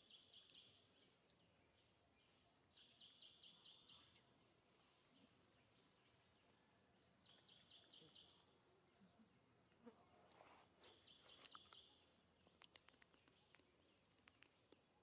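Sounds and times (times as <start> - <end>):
faint clicks: 11.3 - 14.9.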